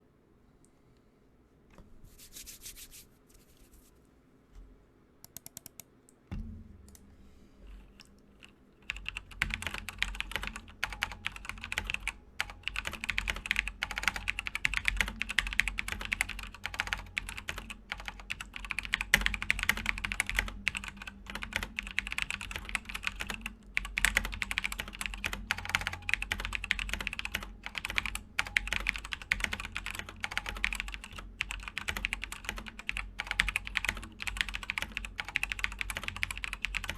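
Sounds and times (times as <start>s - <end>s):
fast typing on mechanical keyboard: 8.8s - 36.9s.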